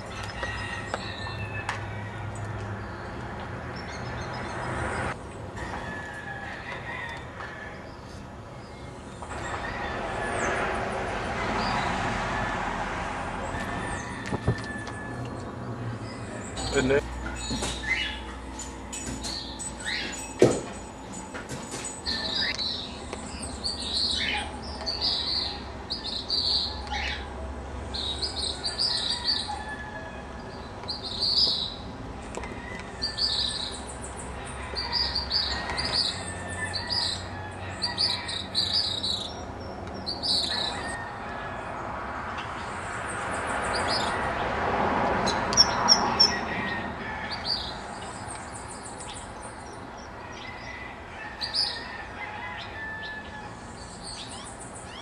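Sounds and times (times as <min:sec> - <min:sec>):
birds chattering calls: 0:13.4 - 0:29.7, 0:30.4 - 0:41.2, 0:45.2 - 0:55.0.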